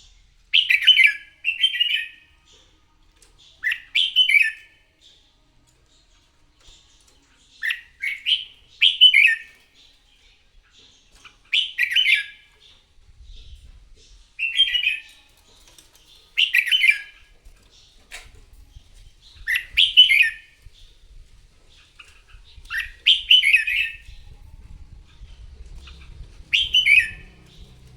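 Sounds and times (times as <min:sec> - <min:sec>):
bird whistling song: 0:00.0 - 0:02.7, 0:03.4 - 0:05.2, 0:06.6 - 0:12.8, 0:14.4 - 0:15.2, 0:16.3 - 0:27.9.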